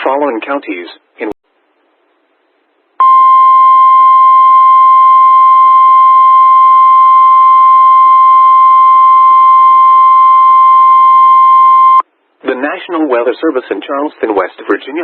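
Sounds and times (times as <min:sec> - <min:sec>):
steady alarm tone: 0:03.0 - 0:12.0.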